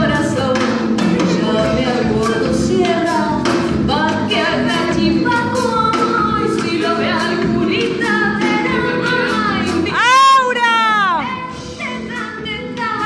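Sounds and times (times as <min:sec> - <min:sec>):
folk song with steady beat: 0:00.0 - 0:10.2.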